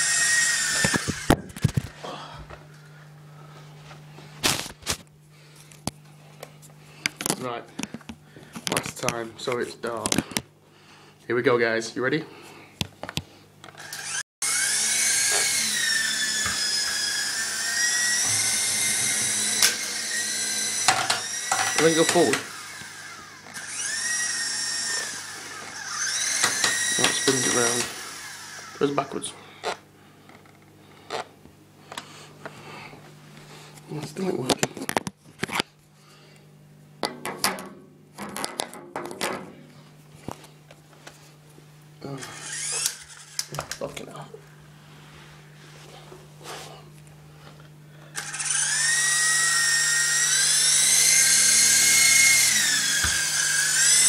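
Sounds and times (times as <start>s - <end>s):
model helicopter motors whining: 0.0s - 1.9s, 13.7s - 29.8s, 42.0s - 43.6s, 48.1s - 54.0s
hard objects knocking and tapping: 20.8s - 21.8s.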